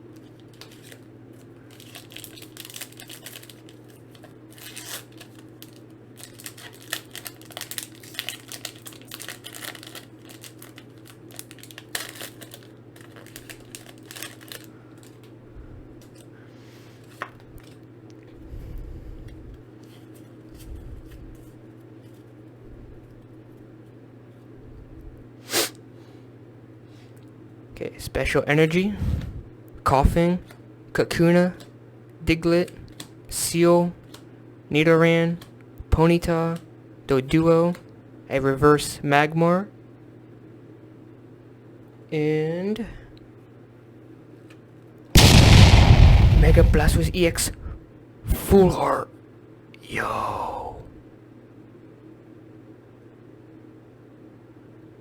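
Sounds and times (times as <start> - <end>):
foil wrapper crinkling: 0.4 - 1.1, 1.7 - 15.2
steady low hum: 18.2 - 19.8, 20.4 - 23.6, 26.4 - 30.9, 45.2 - 49.1, 49.8 - 51.8
low thuds: 45.2 - 47.8.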